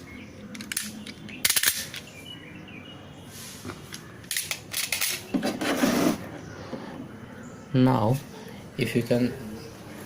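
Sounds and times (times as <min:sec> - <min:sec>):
tools clicking and rattling: 0:00.4 - 0:02.1, 0:03.9 - 0:05.3.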